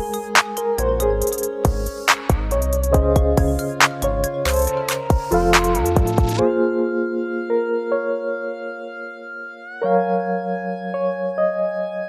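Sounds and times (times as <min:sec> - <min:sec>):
music with drum beat and bass: 0:00.0 - 0:06.4
held keyboard chords: 0:00.0 - 0:12.0.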